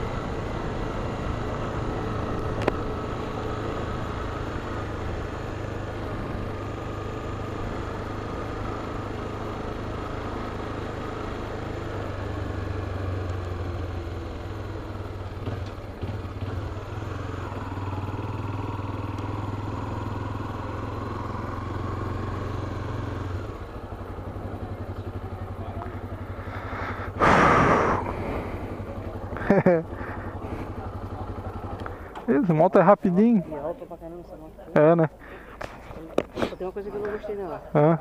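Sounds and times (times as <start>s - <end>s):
motorcycle engine running: 0.0s - 38.0s.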